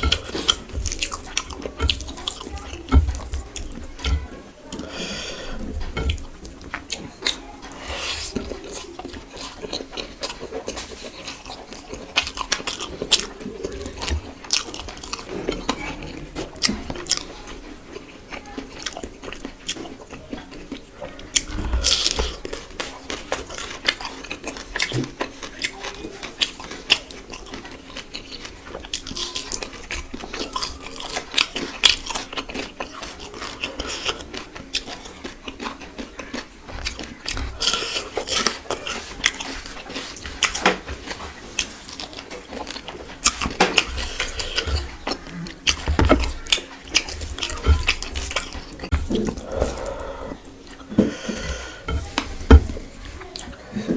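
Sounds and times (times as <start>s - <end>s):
biting and chewing with crunches: 0.0s - 53.9s
wet mouth sounds: 30.3s - 53.7s.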